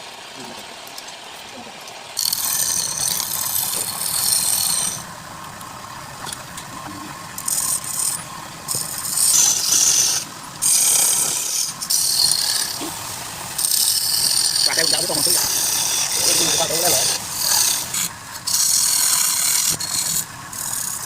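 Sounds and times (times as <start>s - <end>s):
turning tool scraping wood: 2.2s - 5.1s, 7.4s - 21.0s
lathe running: 2.2s - 21.0s.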